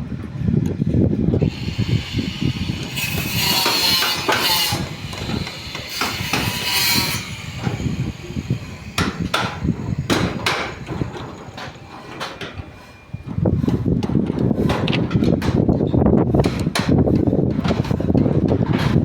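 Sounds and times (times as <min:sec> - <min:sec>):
rasping scraping noise: 0:01.4 - 0:14.9.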